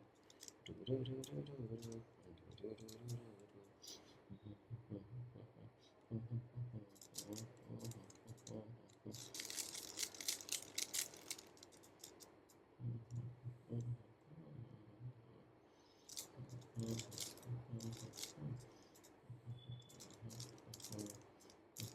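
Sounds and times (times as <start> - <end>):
puzzle cube layers clicking: 16.1 - 18.4, 19.9 - 21.2.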